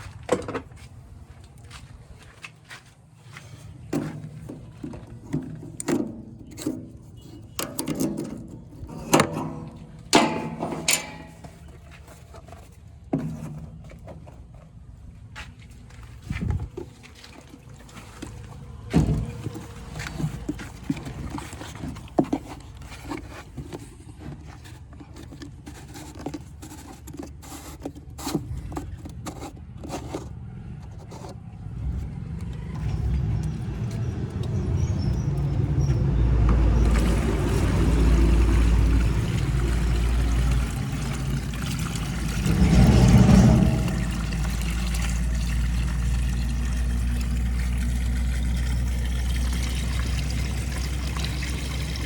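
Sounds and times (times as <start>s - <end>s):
scattered clicks and knocks: 9.1s - 11.8s
diesel engine running: 30.2s - 52.0s.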